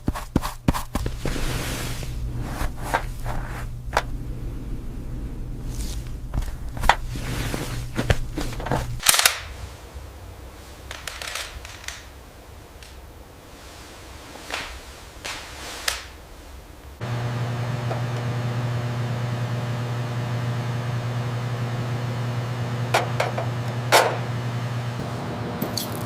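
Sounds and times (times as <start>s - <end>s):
steady machine hum: 1.1s - 9.0s, 17.0s - 26.0s
sharp cracks: 9.0s - 9.6s.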